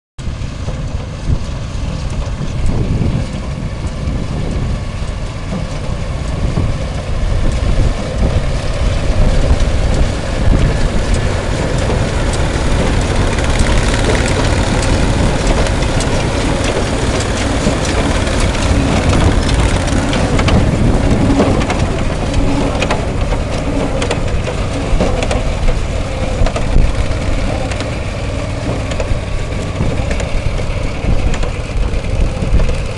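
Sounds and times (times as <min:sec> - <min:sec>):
engine running steadily: 0:00.2 - 0:32.9
baler mechanism knocking and clattering: 0:00.6 - 0:32.9.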